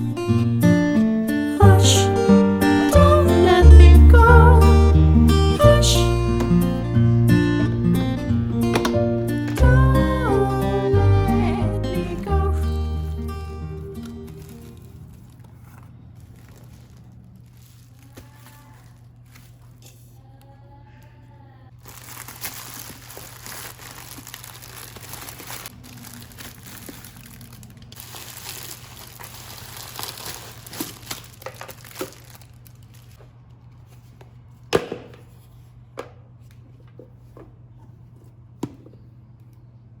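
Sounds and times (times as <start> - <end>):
plastic packaging crinkling and tearing: 13.2 - 19.9, 21.7 - 33.8.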